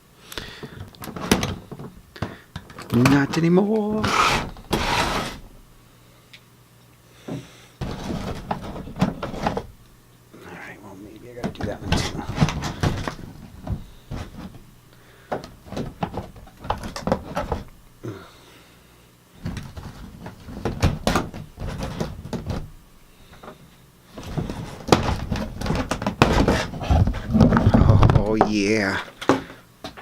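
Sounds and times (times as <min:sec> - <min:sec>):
cardboard and plastic packaging rustling: 0:00.7 - 0:05.6, 0:07.8 - 0:09.8, 0:11.3 - 0:14.7, 0:23.4 - 0:30.0.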